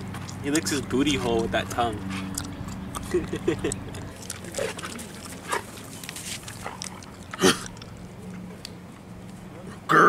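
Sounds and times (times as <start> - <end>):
dog grunting: 6.6 - 7.8.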